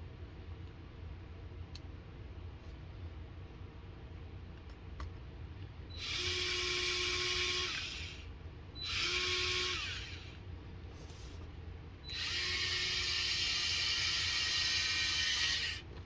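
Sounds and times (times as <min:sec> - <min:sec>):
power driver spinning screws: 0:12.1 - 0:15.8.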